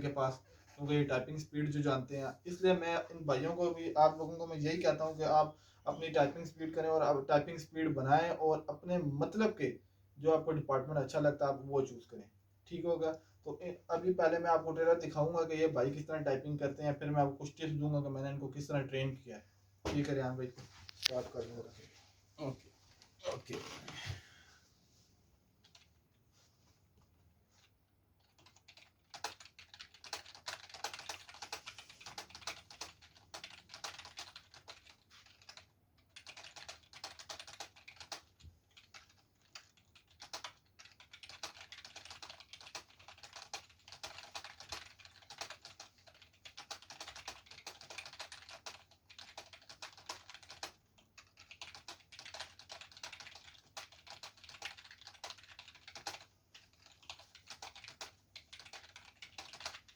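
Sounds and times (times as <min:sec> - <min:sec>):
fast typing on keyboard: 0:00.0 - 0:09.4, 0:25.6 - 0:26.0, 0:27.5 - 0:59.9.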